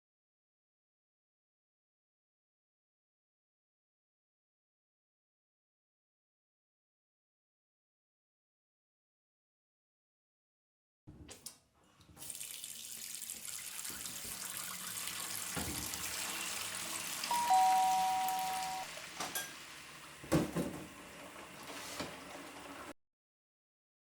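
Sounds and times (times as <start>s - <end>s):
water running into a sink: 12.1s - 23.0s
two steady tones: 17.3s - 18.9s.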